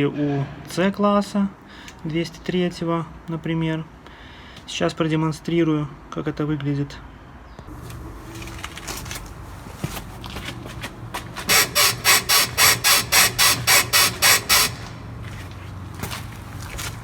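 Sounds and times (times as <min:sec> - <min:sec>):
suspension bushing squeaking: 0:07.7 - 0:17.0.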